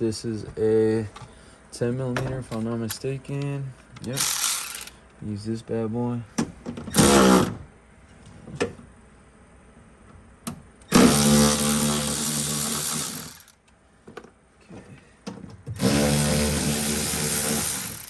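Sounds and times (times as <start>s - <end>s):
power drill whining: 4.2s - 5.0s, 6.9s - 7.6s, 10.9s - 13.5s, 15.8s - 18.0s.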